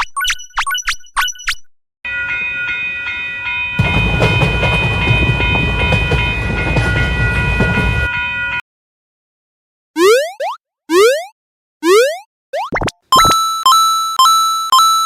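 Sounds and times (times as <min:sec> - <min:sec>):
train passing rumble and clatter: 0:02.1 - 0:08.6.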